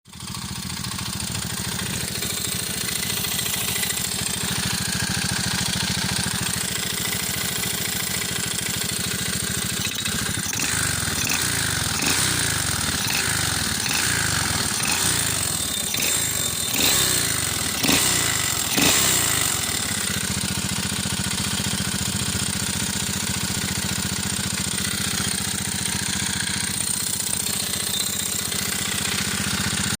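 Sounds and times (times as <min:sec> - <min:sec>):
engine knocking: 0:00.0 - 0:30.0
moped engine idling and revving: 0:00.0 - 0:30.0.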